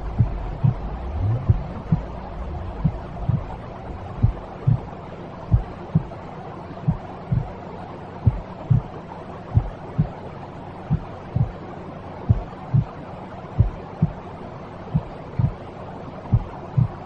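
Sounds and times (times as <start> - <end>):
slow heartbeat thumps: 0.0 - 4.9, 5.5 - 6.2, 6.9 - 7.6, 8.2 - 9.0, 9.6 - 10.2, 10.9 - 11.6, 12.3 - 13.0, 13.6 - 14.3, 14.9 - 15.6, 16.3 - 17.0
white-noise hiss: 0.0 - 17.0.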